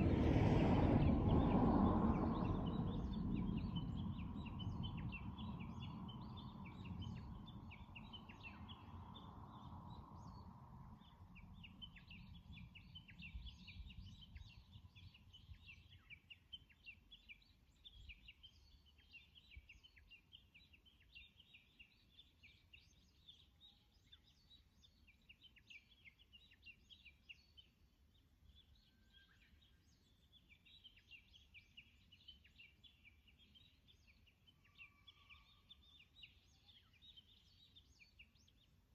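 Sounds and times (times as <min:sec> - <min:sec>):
low rumble: 0:00.0 - 0:07.6
small birds chirping: 0:00.0 - 0:38.9.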